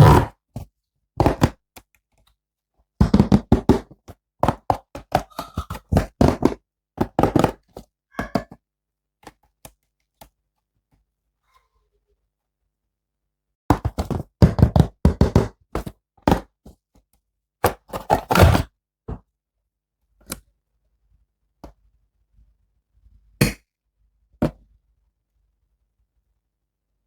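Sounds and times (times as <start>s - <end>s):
knocks and clicks of plastic toys: 1.2s - 1.6s, 3.0s - 8.6s.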